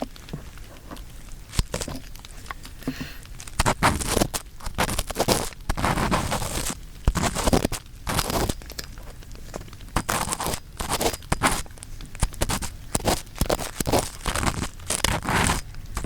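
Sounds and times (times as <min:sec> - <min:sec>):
earpick scraping microphone: 0:00.8 - 0:02.1, 0:02.9 - 0:08.6, 0:10.0 - 0:16.0.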